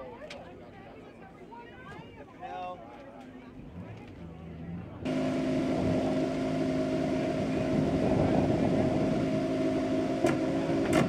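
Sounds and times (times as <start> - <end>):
vehicle engine idling: 4.8 - 11.0.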